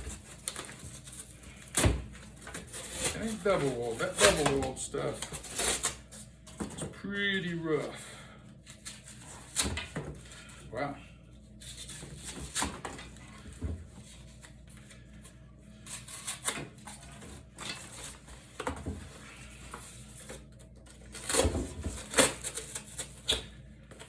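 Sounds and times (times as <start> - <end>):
knife cutting cardboard: 0.0 - 6.0.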